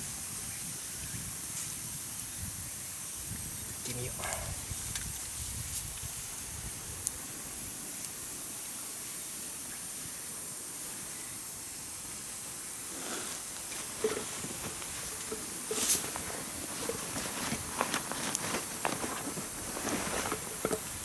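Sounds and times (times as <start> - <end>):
frying pan hissing: 4.5 - 16.9
campfire crackles and pops: 7.0 - 7.2.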